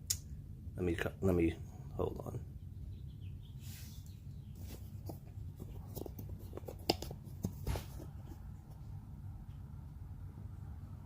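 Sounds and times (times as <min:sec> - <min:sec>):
steady low hum: 0:00.0 - 0:11.0
hands handling small items: 0:04.6 - 0:08.8.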